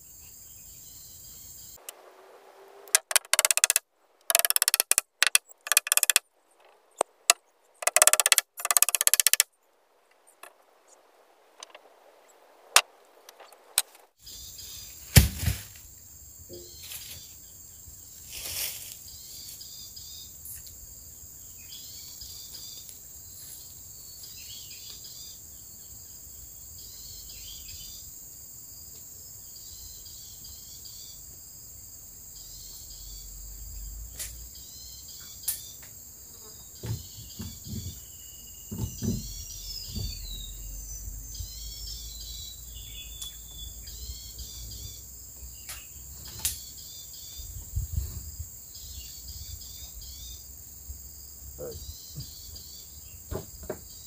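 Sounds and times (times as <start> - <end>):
sharp clicks: 2.9 - 6.2, 7.0 - 9.5
high-pitched insect chorus: 14.2 - 54.0.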